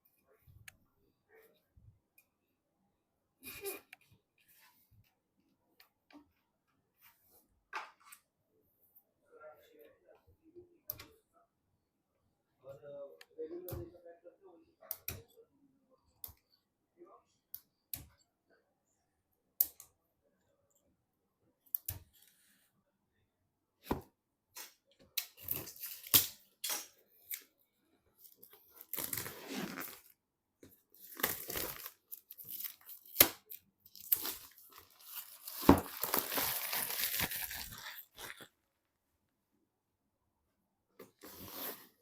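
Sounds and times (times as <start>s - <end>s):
packaging tearing and crinkling: 31.0s - 38.5s.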